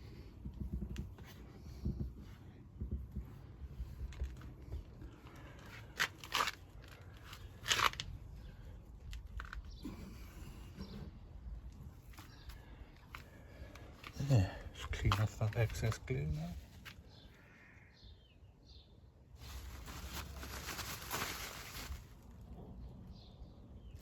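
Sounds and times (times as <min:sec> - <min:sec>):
rustling and crunching handling: 0:00.0 - 0:17.2, 0:19.3 - 0:23.0.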